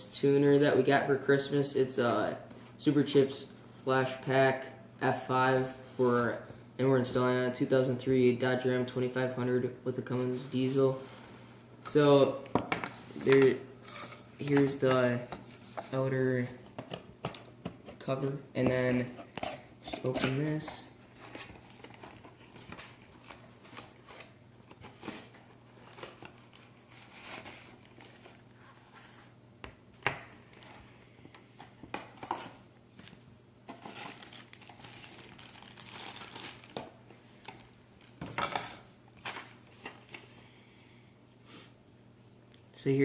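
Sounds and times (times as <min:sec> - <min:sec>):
packaging crinkling and tearing: 0:33.7 - 0:38.2.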